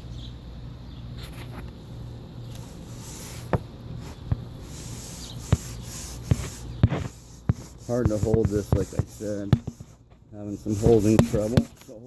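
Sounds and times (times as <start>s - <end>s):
faint rubbing: 2.5s - 12.0s
sharp knocks of fan blade: 6.3s - 10.0s, 10.8s - 11.9s.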